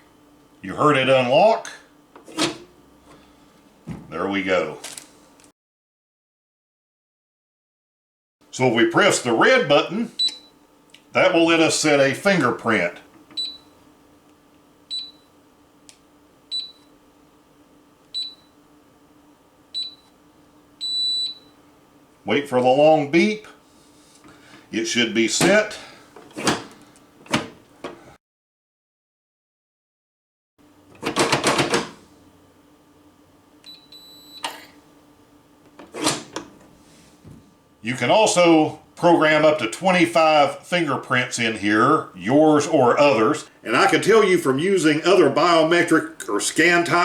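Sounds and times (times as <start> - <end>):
long beep: 33.7 - 34.5.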